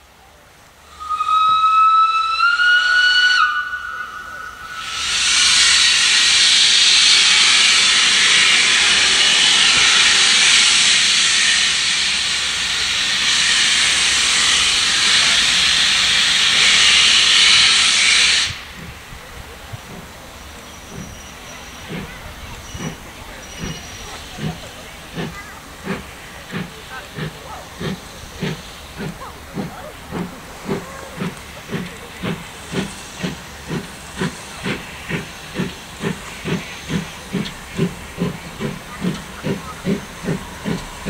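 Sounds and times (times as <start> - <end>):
hiss of escaping steam: 0.8 - 41.0
steam whistle: 0.9 - 18.6.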